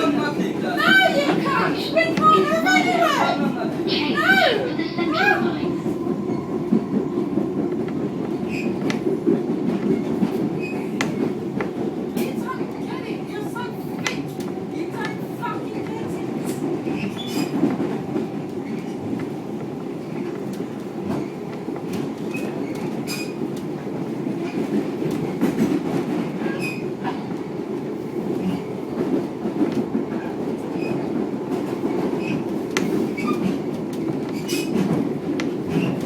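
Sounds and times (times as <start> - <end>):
train wheels rumbling on track: 0.0 - 36.0
clicks of train wheels: 6.0 - 12.9, 13.5 - 27.4, 28.2 - 36.0.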